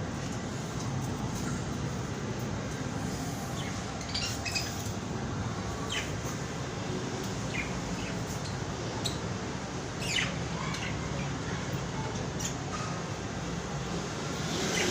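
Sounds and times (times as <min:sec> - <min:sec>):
parrot chirping: 0:03.6 - 0:04.9.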